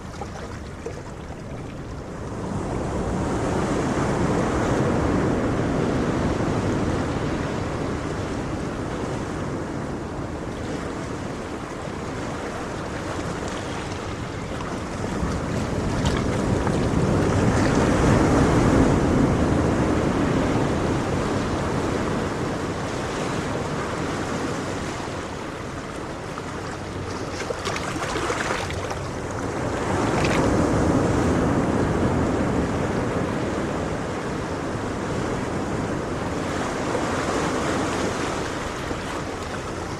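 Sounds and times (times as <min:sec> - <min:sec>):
ocean waves washing in: 0:00.0 - 0:39.9.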